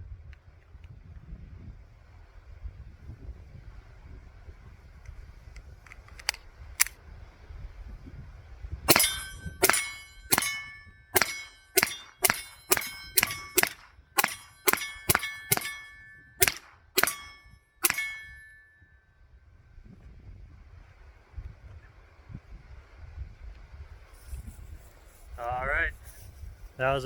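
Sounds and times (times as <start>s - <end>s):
pistol shots: 8.9s - 18.6s
ringing metallic clang: 8.9s - 19.0s.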